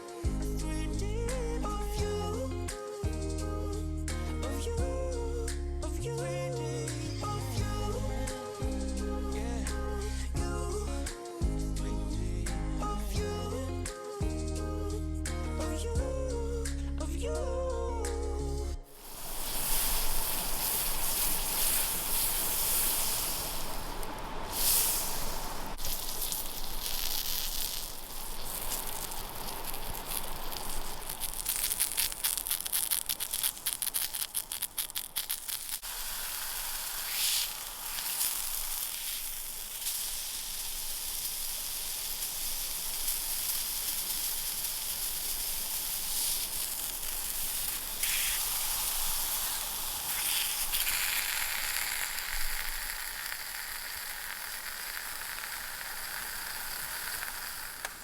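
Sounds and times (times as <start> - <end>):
food sizzling in a pan: 0.0 - 0.8, 6.2 - 10.5, 18.9 - 58.0
fat crackling and spitting: 18.8 - 58.0.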